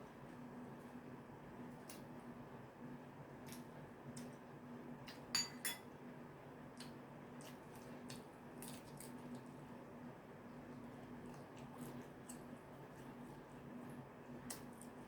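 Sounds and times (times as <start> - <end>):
cutlery clinking against dish: 5.1 - 5.9.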